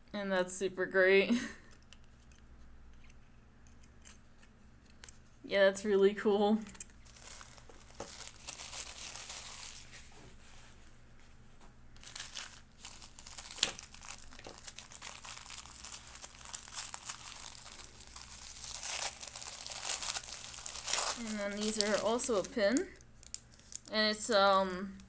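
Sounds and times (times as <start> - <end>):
packaging crinkling and tearing: 6.7 - 10.1, 12.0 - 24.0.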